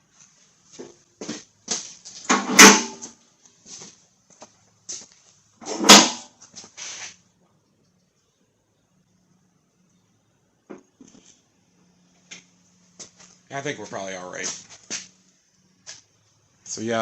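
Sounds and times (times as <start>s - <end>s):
loud metal clunks: 2.3s - 3.2s, 5.6s - 6.3s.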